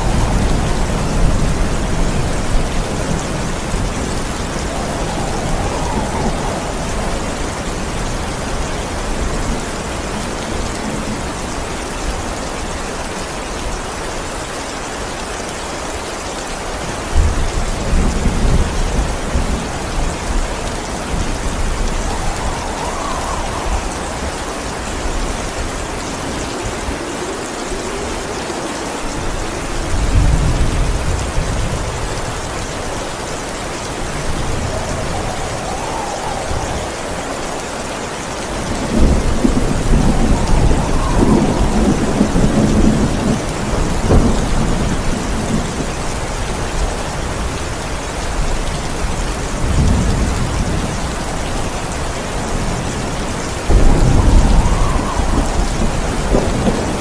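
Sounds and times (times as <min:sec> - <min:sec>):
rolling thunder: 0:00.0 - 0:13.2, 0:16.9 - 0:57.0
heavy rain: 0:00.0 - 0:57.0
thunder crack: 0:34.1 - 0:45.9, 0:53.7 - 0:57.0.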